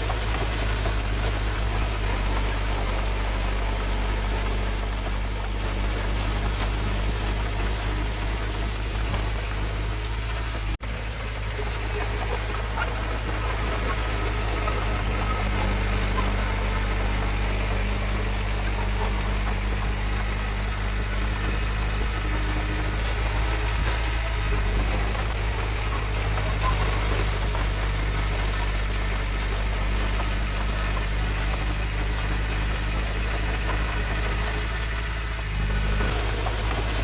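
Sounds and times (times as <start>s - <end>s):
diesel engine running: 0.0s - 37.0s.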